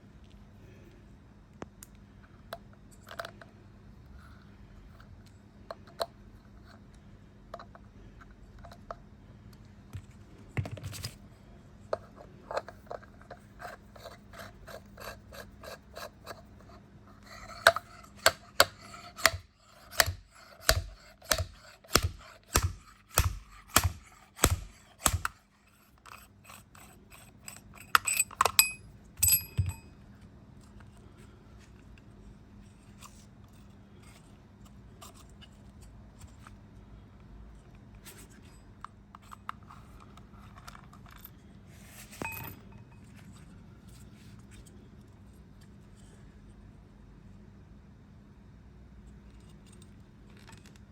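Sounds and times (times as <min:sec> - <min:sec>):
hand tool clicks and knocks: 0:17.6 - 0:25.4, 0:27.9 - 0:29.9.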